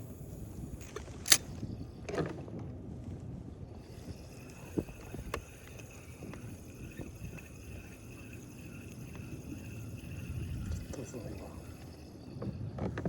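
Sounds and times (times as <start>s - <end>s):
wind: 0.0s - 13.0s.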